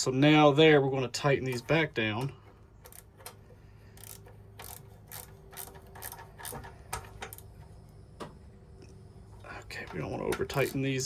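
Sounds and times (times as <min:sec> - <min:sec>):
ratchet wrench clicking: 0:02.8 - 0:07.5, 0:09.9 - 0:11.0.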